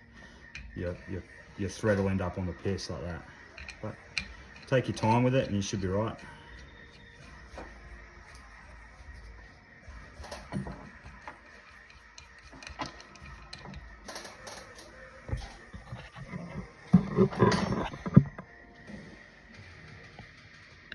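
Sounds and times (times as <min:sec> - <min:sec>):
clicks and knocks of handling: 0:10.1 - 0:18.5.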